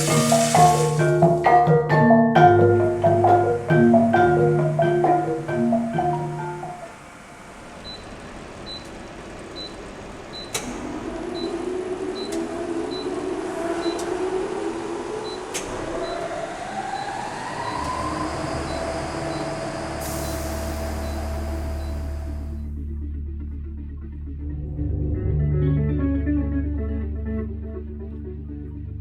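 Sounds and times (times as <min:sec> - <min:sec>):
slow rising tone: 0:00.0 - 0:07.4, 0:11.0 - 0:22.6.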